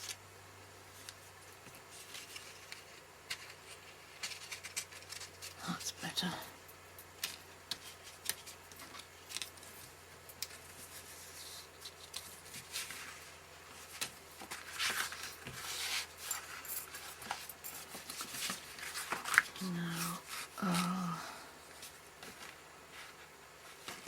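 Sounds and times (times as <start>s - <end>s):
stiff card rustling and scraping: 1.0s - 5.6s, 7.2s - 21.0s.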